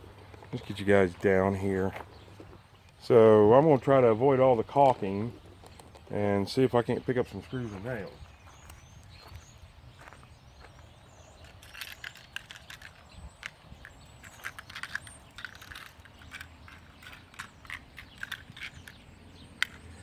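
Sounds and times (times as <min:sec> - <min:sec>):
screws and nails clinking: 0:11.4 - 0:19.9.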